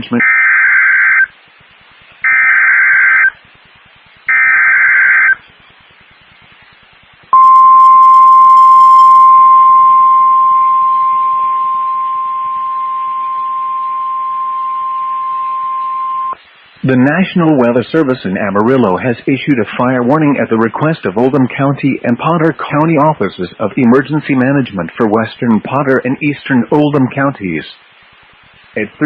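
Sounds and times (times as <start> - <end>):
steady high alarm tone: 7.4 - 16.4.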